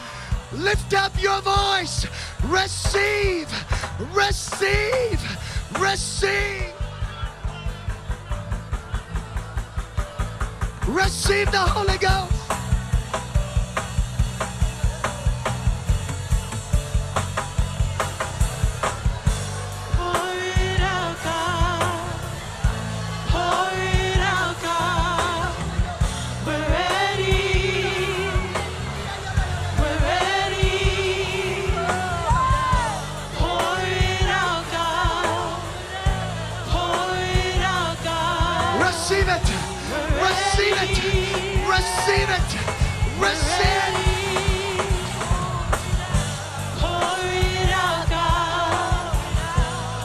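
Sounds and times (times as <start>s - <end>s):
fast drum beat: 0.0s - 50.0s
steady bass: 0.0s - 50.0s
person singing: 23.3s - 50.0s.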